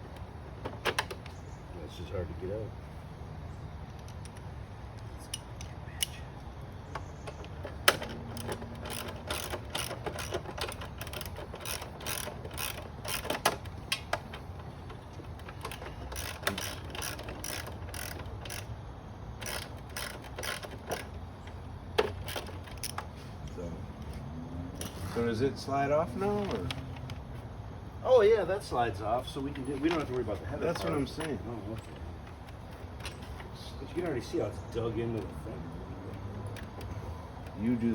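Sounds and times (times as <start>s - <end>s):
ratchet wrench clicking: 7.3s - 14.3s, 15.3s - 18.8s, 19.4s - 21.2s, 22.0s - 23.1s.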